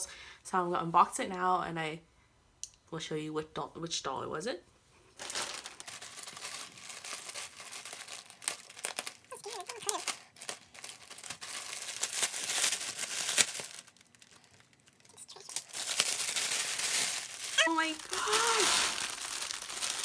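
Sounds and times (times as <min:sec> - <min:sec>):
packaging crinkling and tearing: 0:05.2 - 0:20.0.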